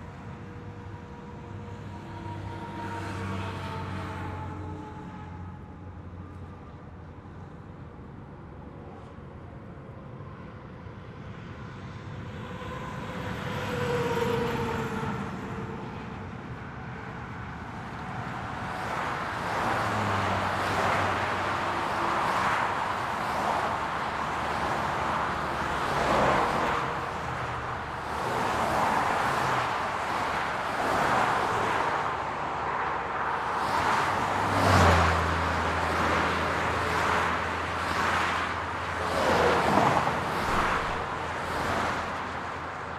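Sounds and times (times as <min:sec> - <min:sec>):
highway traffic rushing: 0:00.0 - 0:42.9
vehicles passing: 0:12.2 - 0:42.9
heavy vehicle engine hum: 0:15.6 - 0:42.9.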